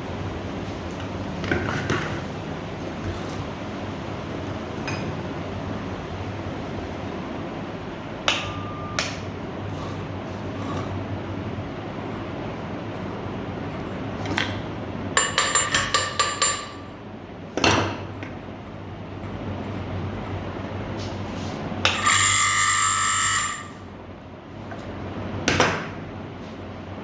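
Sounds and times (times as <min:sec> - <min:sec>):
ringing metallic scrape: 0:21.9 - 0:23.9.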